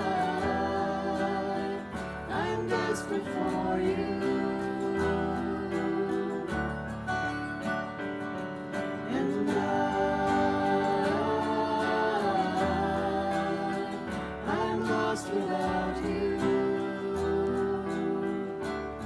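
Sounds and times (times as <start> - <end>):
acoustic guitar strumming: 0.0 - 19.0.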